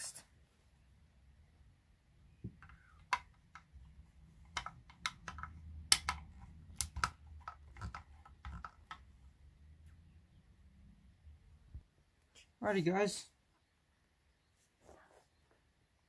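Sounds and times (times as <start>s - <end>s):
plastic parts clicking and knocking: 2.4s - 9.2s.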